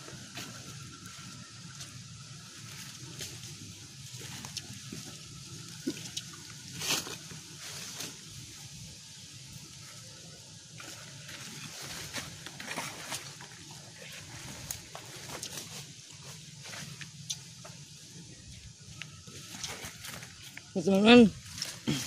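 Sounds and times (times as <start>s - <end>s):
rustling and crackling: 2.6s - 8.6s, 10.9s - 18.0s.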